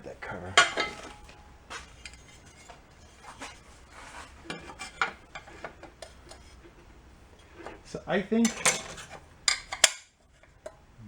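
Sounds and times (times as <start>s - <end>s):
metal engine parts handled: 0.0s - 10.9s.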